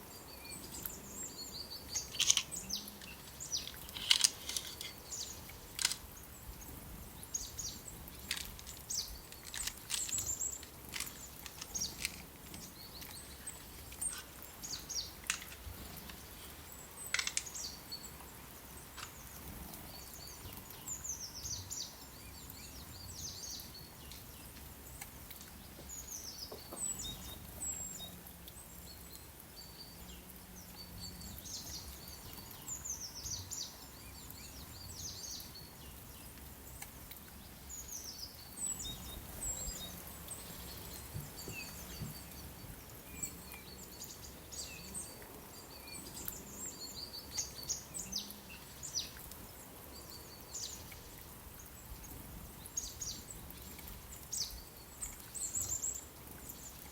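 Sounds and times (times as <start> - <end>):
songbirds chirping and singing: 0.0 - 24.4, 37.3 - 51.2
sharp clicks: 2.0 - 6.1, 8.2 - 13.2, 17.1 - 17.6.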